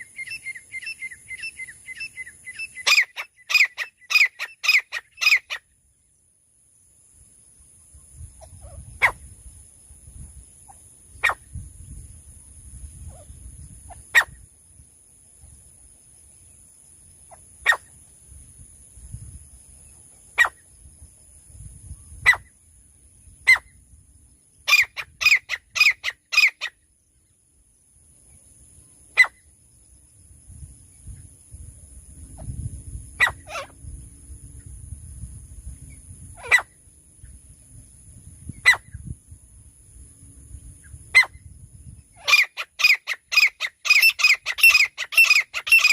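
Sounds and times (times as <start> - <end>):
francolin calling: 0.0 - 6.1, 16.3 - 18.1, 19.7 - 21.0, 21.8 - 27.4, 28.2 - 29.6, 32.3 - 34.0, 35.8 - 37.4, 38.4 - 39.2, 40.6 - 45.9.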